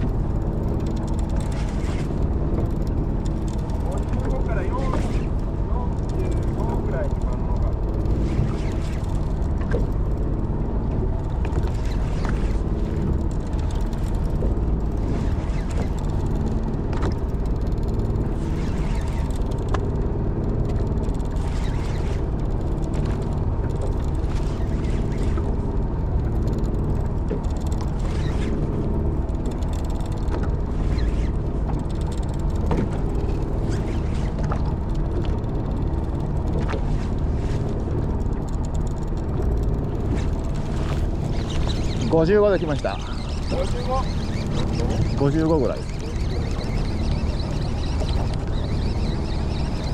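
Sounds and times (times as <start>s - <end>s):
boat engine rumble: 0.0s - 49.9s.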